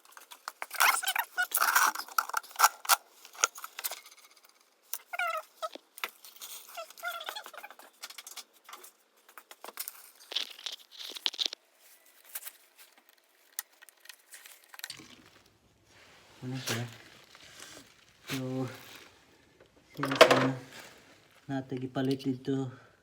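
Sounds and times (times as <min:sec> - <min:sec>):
short squeaky sounds: 0:05.0 - 0:05.8, 0:06.4 - 0:08.0.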